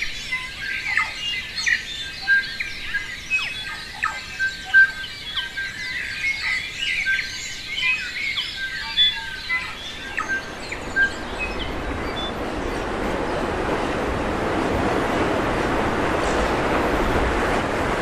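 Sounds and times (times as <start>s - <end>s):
forest birds chirping: 0.0s - 18.0s
rushing water: 9.4s - 18.0s.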